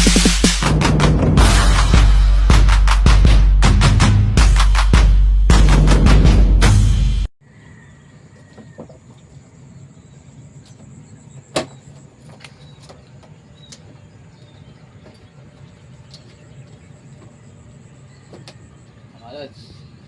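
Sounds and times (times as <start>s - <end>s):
loud intro music: 0.0s - 7.3s.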